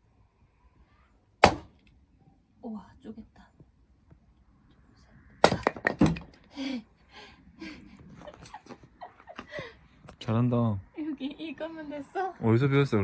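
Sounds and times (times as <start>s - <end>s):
axe chopping firewood: 1.4s - 1.8s, 5.4s - 6.3s.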